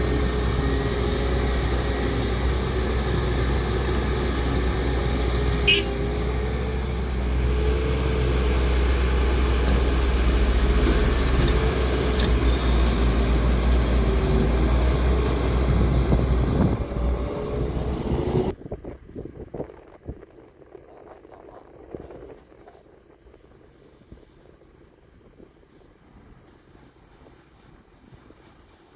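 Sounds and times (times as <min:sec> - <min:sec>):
heavy machinery diesel drone: 0:00.0 - 0:18.6.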